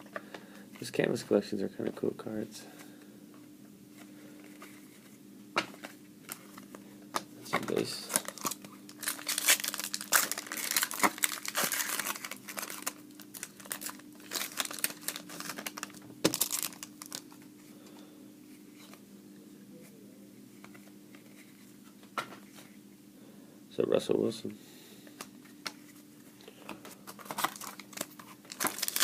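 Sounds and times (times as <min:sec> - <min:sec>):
wrapper tearing and crinkling: 0:07.7 - 0:17.4, 0:27.1 - 0:29.0.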